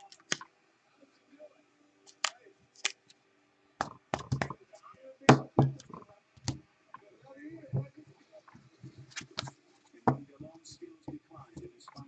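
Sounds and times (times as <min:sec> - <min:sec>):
cards and card holders clicking: 0:00.0 - 0:00.5.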